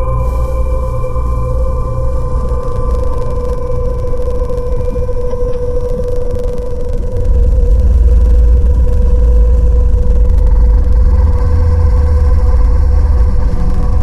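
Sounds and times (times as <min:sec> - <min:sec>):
deep ambient drone: 0:00.0 - 0:14.0.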